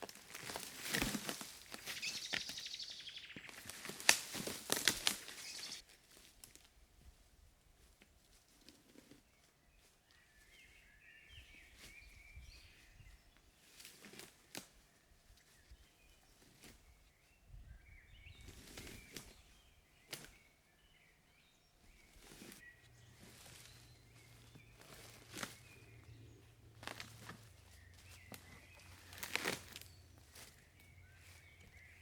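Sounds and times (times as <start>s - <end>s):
wood snapping and rustling: 0.0s - 1.9s, 3.5s - 5.8s, 28.3s - 30.6s
faint high bird calls: 1.6s - 5.8s, 14.8s - 32.0s.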